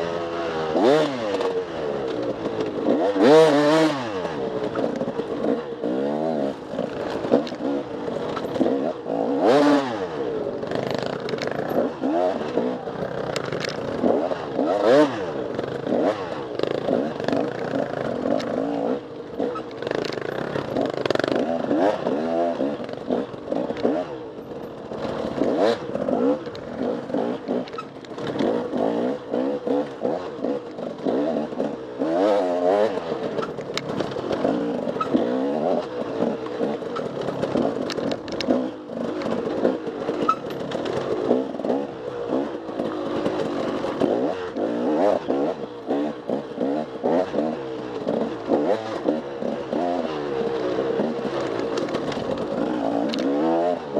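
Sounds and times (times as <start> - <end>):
clatter: 0.0 - 53.9
dirt bike engine revving: 0.0 - 53.9.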